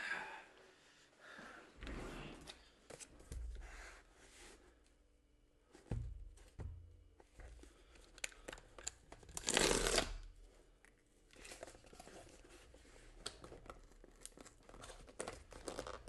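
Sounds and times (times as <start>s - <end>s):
packaging tearing and crinkling: 8.3s - 10.2s, 13.7s - 16.0s.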